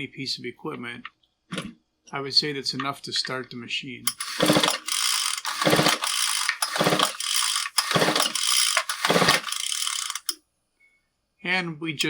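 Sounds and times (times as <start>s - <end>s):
engine compression surge: 4.1s - 10.4s
recoil starter rattling whir: 4.1s - 10.4s.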